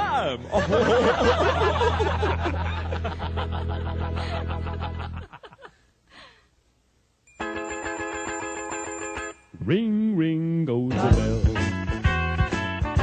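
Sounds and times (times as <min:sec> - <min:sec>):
faint breath: 0:06.1 - 0:06.6.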